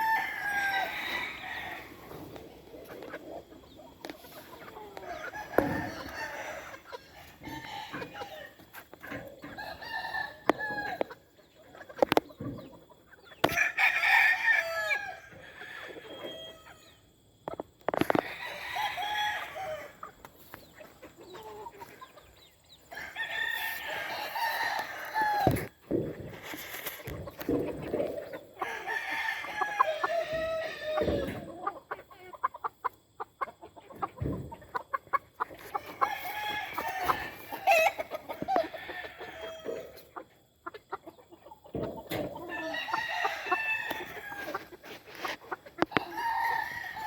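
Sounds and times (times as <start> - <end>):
roosters crowing: 0.0 - 11.4, 13.4 - 17.1, 17.9 - 20.2, 22.8 - 31.8, 35.5 - 40.1, 41.8 - 47.0
chickens clucking: 0.0 - 47.0.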